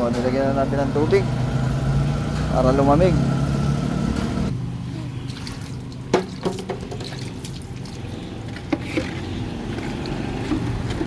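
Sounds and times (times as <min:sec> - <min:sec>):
water poured onto engine: 0:05.3 - 0:11.0.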